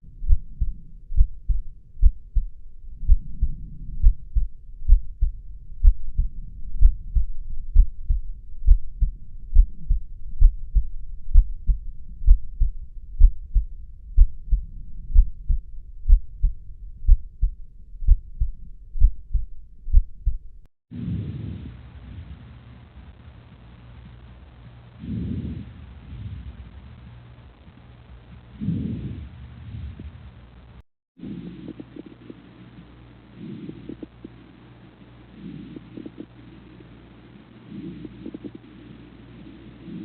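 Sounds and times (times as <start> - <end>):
heartbeat lub-dub: 0.0 - 20.7.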